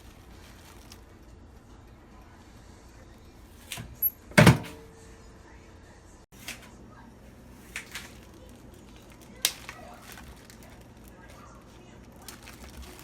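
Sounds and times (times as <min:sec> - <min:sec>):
microwave door thud: 0:03.7 - 0:05.0.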